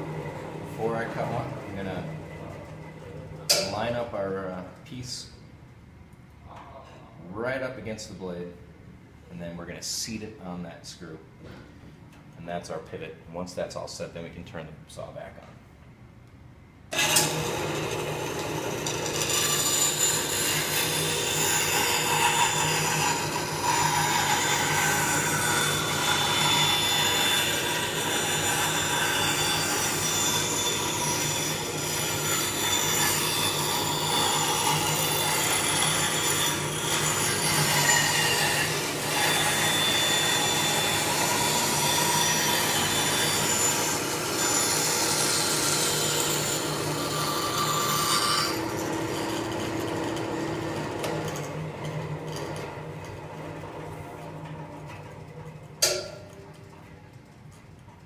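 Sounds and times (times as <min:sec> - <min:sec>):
bandsaw cutting wood: 0:16.9 - 0:52.8.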